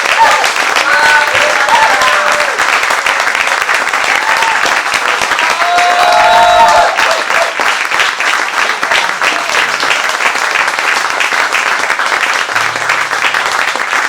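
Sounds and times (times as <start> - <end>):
audience applauding: 0.0 - 14.0.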